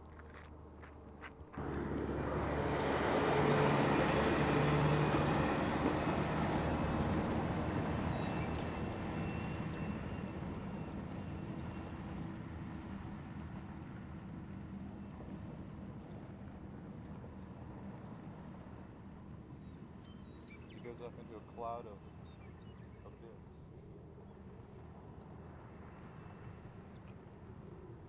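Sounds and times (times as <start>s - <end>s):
rushing mechanical noise: 1.6s - 12.6s
heavy vehicle engine running: 1.6s - 16.9s.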